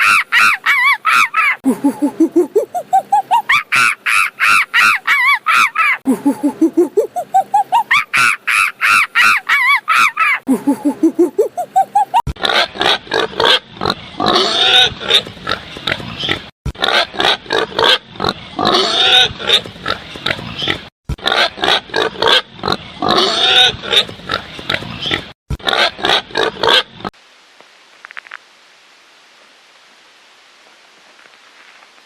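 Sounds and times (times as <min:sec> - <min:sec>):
animal squealing calls: 0:00.0 - 0:12.7.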